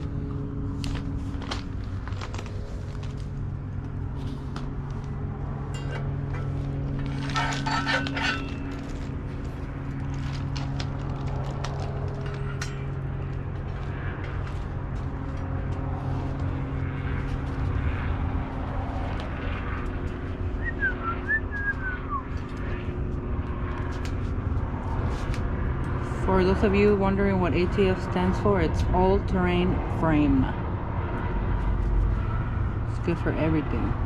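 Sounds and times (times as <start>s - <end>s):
low motor hum: 0.0s - 34.0s.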